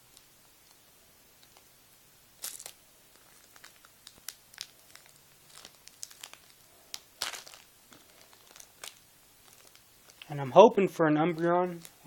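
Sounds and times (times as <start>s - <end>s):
wrapper tearing and crinkling: 2.4s - 10.3s, 11.7s - 12.0s.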